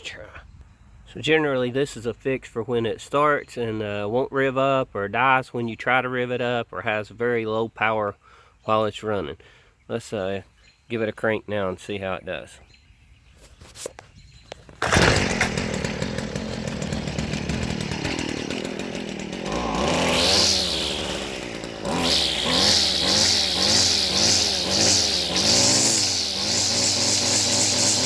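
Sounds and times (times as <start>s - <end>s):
string trimmer engine revving: 14.7s - 28.0s.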